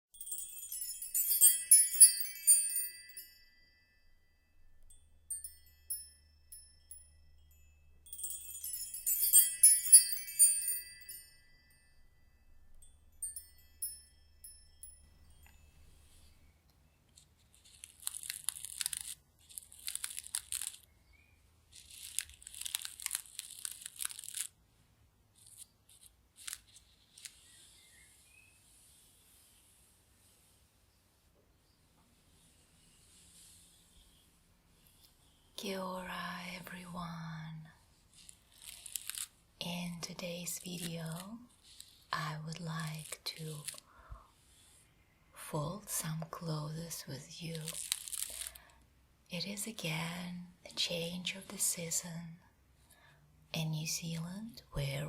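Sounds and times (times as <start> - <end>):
high ringing chime tones: 0.1 - 16.6.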